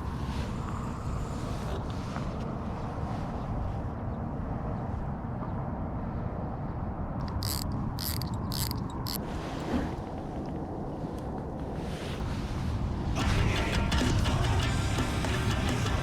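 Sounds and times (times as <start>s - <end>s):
wind rumble on microphone: 0.0s - 13.8s
fishing reel ratcheting buzz: 7.2s - 9.2s.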